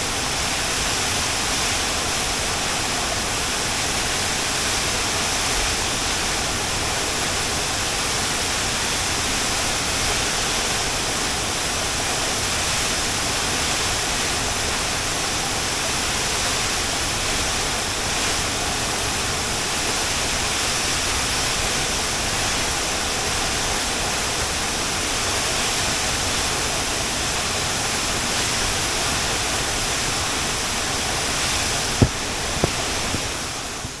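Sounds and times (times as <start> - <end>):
sharp knocks: 32.0 - 33.2.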